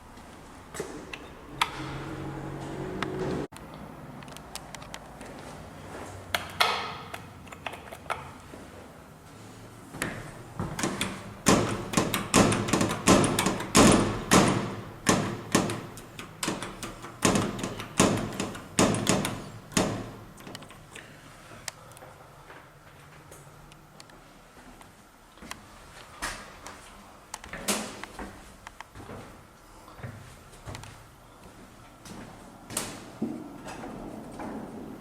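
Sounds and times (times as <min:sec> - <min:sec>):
sharp echoing knocks: 0:11.4 - 0:20.3.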